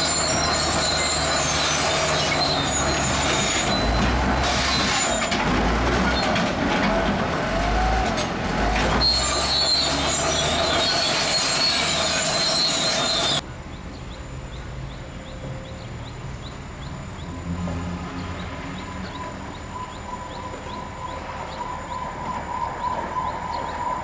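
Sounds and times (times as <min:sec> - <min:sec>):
steel tracks squealing and clanking: 0:00.0 - 0:13.4, 0:18.8 - 0:24.0
bulldozer engine rumbling: 0:00.0 - 0:24.0.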